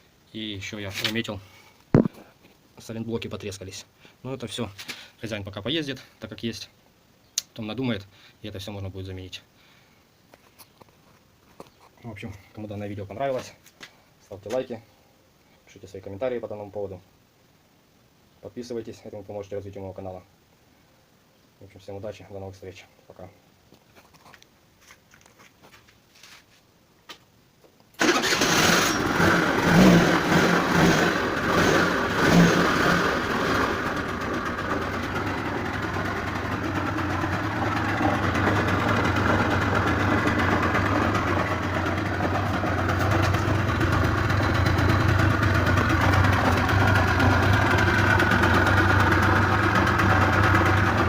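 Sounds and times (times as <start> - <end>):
scooter engine starting and idling: 28.0 - 51.0.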